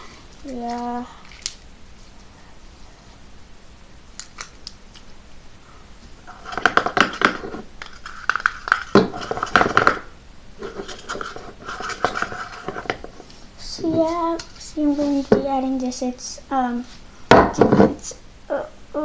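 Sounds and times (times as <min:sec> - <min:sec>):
slime squelching: 0:00.0 - 0:01.7.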